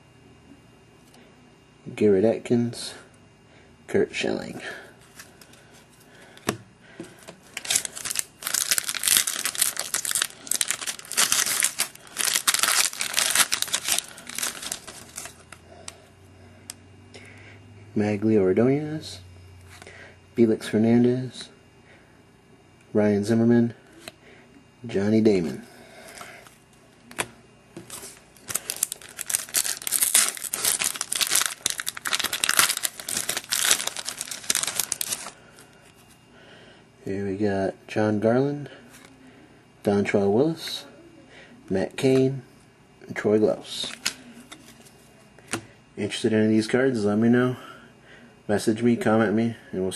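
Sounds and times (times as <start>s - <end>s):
wrapper tearing and crinkling: 7.5s - 15.5s, 27.9s - 35.4s.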